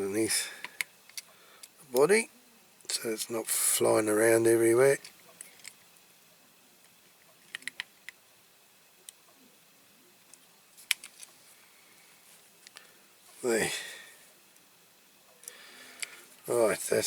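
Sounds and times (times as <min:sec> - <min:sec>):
toy truck clicks and taps: 0:07.5 - 0:08.2.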